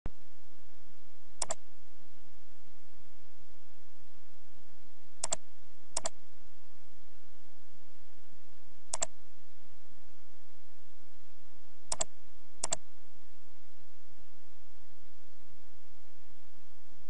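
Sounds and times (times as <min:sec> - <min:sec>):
mouse button clicking: 0:05.2 - 0:05.4, 0:06.0 - 0:06.2, 0:08.9 - 0:09.1, 0:11.9 - 0:12.8.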